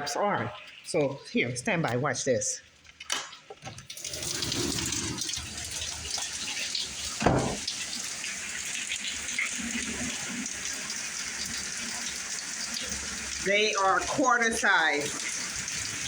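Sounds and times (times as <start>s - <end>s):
low thump: 7.2s - 7.6s
heavy rain pouring: 9.4s - 16.0s.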